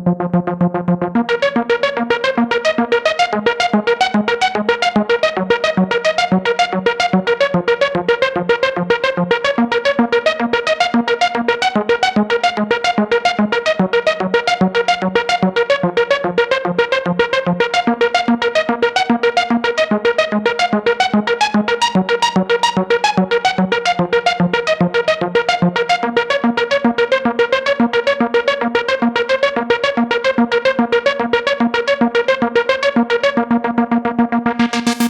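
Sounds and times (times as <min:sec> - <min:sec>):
synthesizer plucky notes: 0:34.4 - 0:35.0
low synthesizer bass note: 0:34.5 - 0:35.0.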